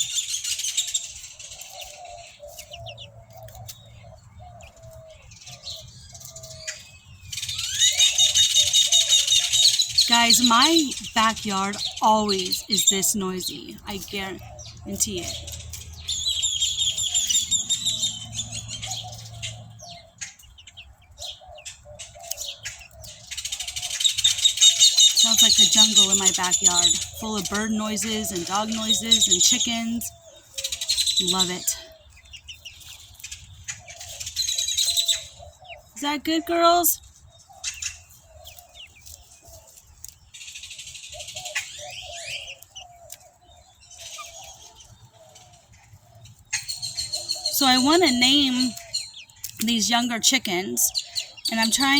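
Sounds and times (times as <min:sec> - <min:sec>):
chickens clucking: 0:00.0 - 0:51.9
wild birds chirping: 0:00.0 - 0:51.9
high rapid bird trill: 0:05.8 - 0:20.1, 0:23.3 - 0:31.9, 0:46.5 - 0:51.9.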